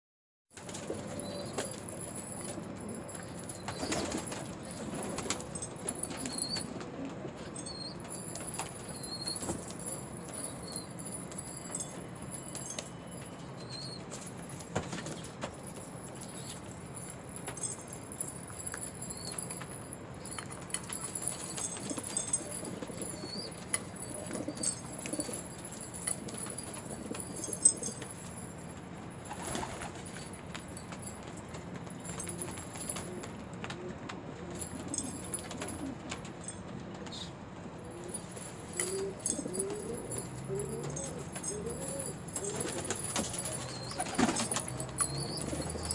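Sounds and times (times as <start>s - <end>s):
pigeons cooing: 0.7s - 10.9s, 20.9s - 28.0s, 37.1s - 45.9s.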